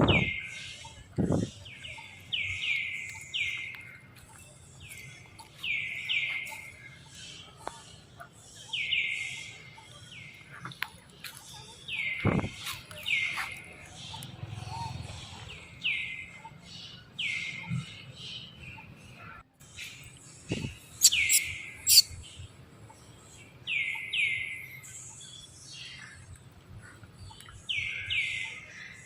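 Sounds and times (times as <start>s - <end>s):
high falling chirping calls: 19.9s - 22.4s.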